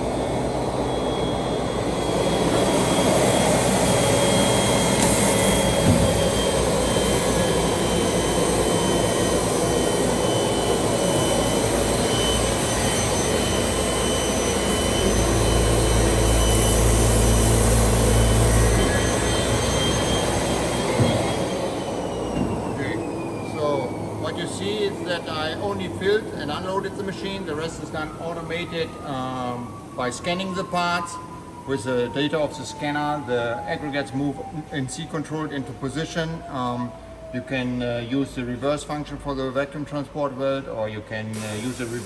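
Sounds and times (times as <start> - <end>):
sanding machine running: 0.0 - 29.8.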